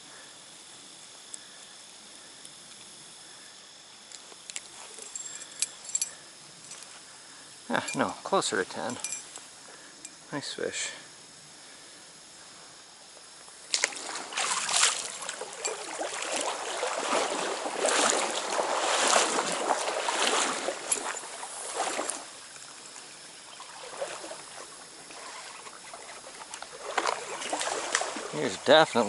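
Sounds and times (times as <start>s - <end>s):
water splashing and sloshing: 13.7s - 28.8s
water stream rushing: 13.7s - 29.0s.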